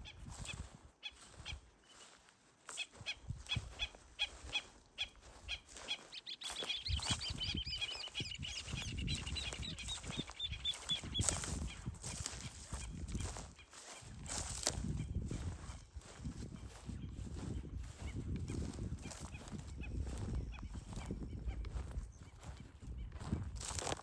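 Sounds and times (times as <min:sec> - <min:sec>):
short sharp bird calls: 0:00.0 - 0:12.9
bird chattering: 0:02.8 - 0:11.9.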